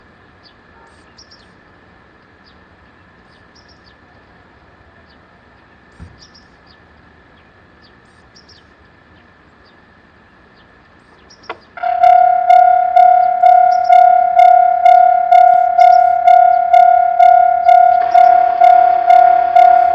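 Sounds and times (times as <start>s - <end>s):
small birds chirping: 0.4s - 1.6s, 2.2s - 4.2s, 5.0s - 19.9s
level crossing warning bell: 11.8s - 19.9s.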